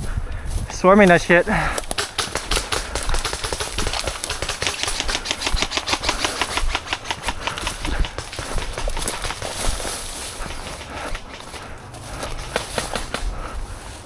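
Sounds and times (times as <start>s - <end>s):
airsoft guns firing: 1.8s - 13.3s.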